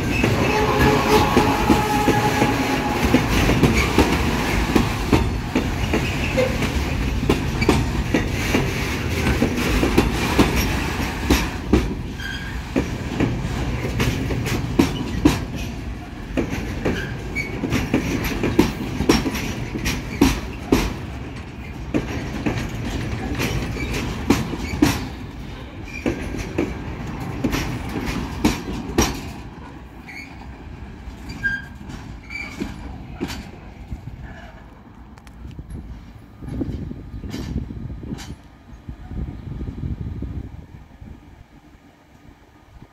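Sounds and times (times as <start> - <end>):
wheels clacking over rail joints: 0.0 - 38.7
train wagons rumbling: 0.0 - 42.9
high wheel squeals: 12.2 - 12.7, 30.0 - 30.4, 31.2 - 32.7.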